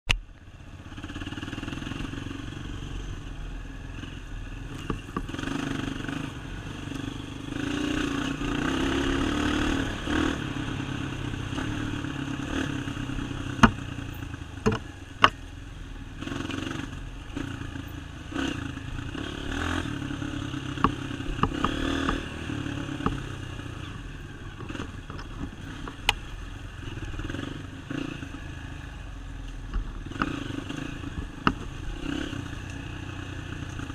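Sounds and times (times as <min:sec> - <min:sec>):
dirt bike engine revving: 0:03.9 - 0:15.4, 0:16.1 - 0:29.1, 0:29.8 - 0:33.9
bike rattling and knocking: 0:12.6 - 0:15.4, 0:20.7 - 0:23.4.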